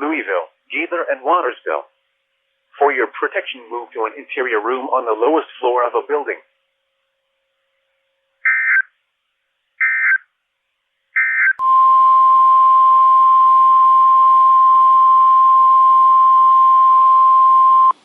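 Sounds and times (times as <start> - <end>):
screeching digital header tones: 8.4 - 8.9, 9.8 - 10.2, 11.2 - 12.0
steady alarm tone: 8.4 - 8.9, 9.8 - 10.2, 11.2 - 18.0.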